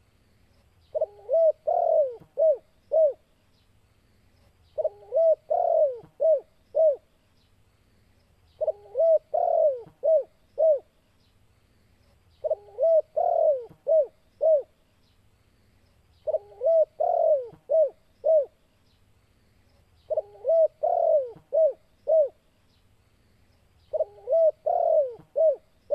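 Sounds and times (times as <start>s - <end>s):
dove cooing: 0.9s - 3.3s, 4.8s - 7.1s, 8.6s - 10.9s, 12.4s - 14.7s, 16.2s - 18.6s, 20.1s - 22.4s, 23.9s - 25.9s.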